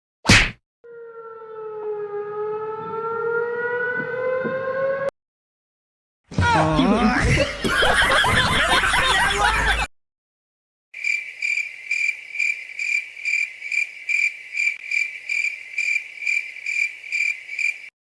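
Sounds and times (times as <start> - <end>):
loud voice-like clip: 6.3 - 7.4
cricket chirping: 11.0 - 17.9.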